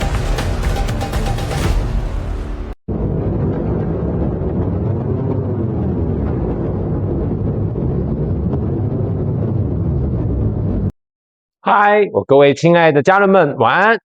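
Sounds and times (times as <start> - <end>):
low rumbling drone: 0.0 - 10.9.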